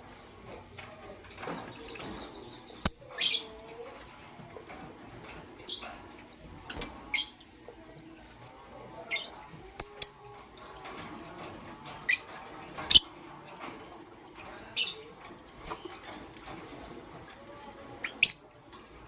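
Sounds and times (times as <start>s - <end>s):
lovebird chirping: 1.6s - 4.1s, 5.6s - 8.0s, 8.9s - 10.4s.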